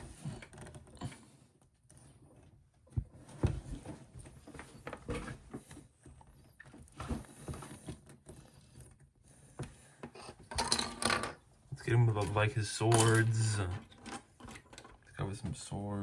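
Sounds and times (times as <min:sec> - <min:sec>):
plastic parts clicking and knocking: 0:09.6 - 0:11.4, 0:12.1 - 0:15.1.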